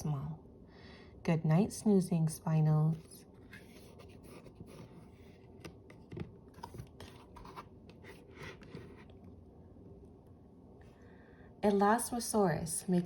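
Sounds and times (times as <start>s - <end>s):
book pages rustling: 2.9s - 9.2s.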